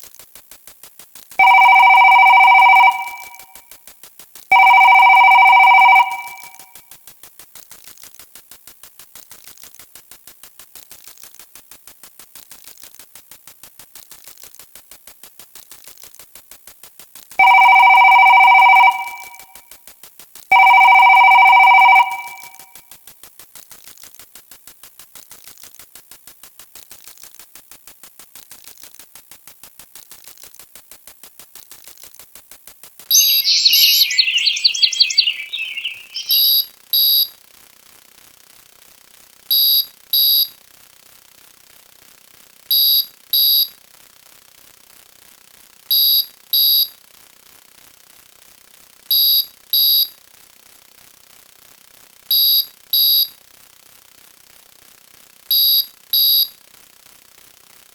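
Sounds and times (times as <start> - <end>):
electronic ringing tones: 1.4 - 3.4, 20.8 - 22.5, 33.1 - 36.6
high warbling electronic chirping: 33.1 - 36.6.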